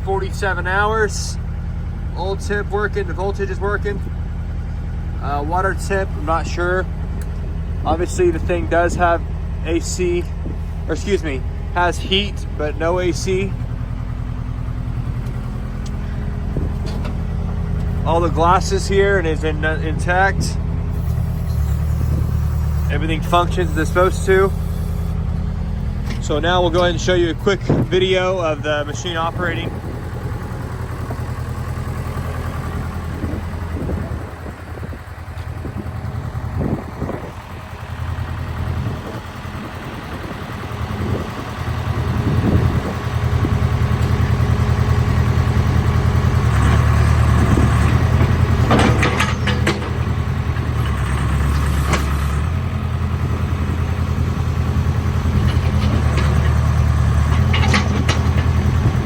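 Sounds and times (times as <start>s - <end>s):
diesel backhoe engine running: 0.0s - 59.0s
metallic knocks: 48.6s - 50.1s, 57.3s - 58.7s.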